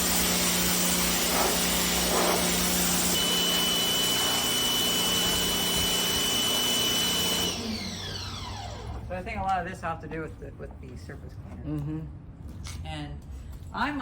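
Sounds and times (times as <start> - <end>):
pressure washer spraying: 0.0 - 8.2
high steady whine: 0.0 - 8.8.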